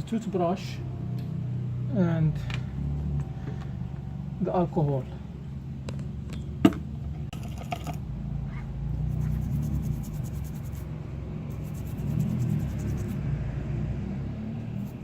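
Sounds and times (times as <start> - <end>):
steady low hum: 8.0 - 13.4, 14.3 - 15.0
toothbrush scrubbing circuit board: 9.1 - 10.9, 11.5 - 13.2, 14.8 - 15.0.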